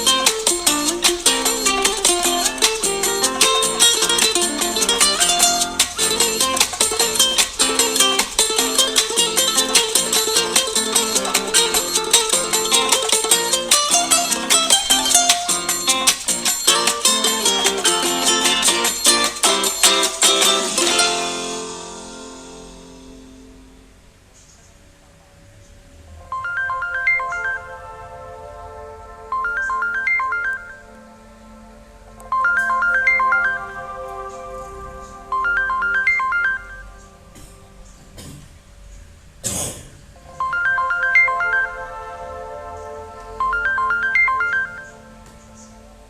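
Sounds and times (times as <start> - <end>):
phone ringtone plucked melody: 0.0 - 22.5, 26.3 - 28.1, 29.3 - 30.9, 32.3 - 34.2, 35.3 - 37.0, 40.4 - 42.2, 43.4 - 45.1.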